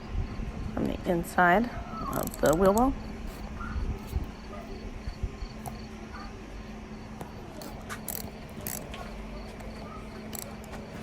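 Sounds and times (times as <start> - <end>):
crickets chirping: 0.0 - 0.8, 1.8 - 11.0
steady low hum: 0.0 - 11.0
hex key clicking on nuts: 7.6 - 8.9, 9.6 - 10.7.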